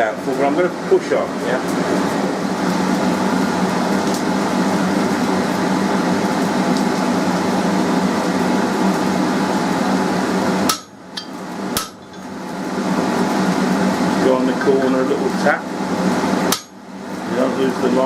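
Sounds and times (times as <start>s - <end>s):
hammer striking metal on anvil: 10.7s - 12.2s, 16.5s - 16.8s.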